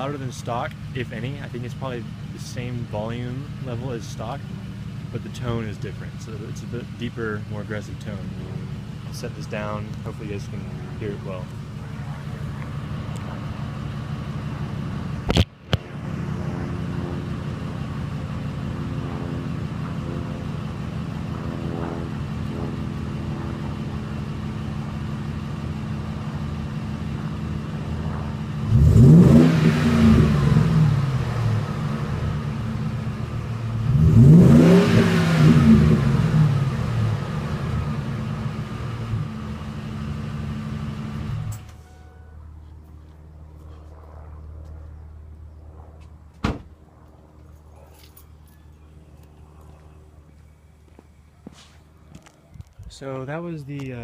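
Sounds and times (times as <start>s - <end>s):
truck engine idling: 0.0s - 29.2s, 29.9s - 34.8s, 35.6s - 44.9s
engine revving: 0.0s - 41.8s.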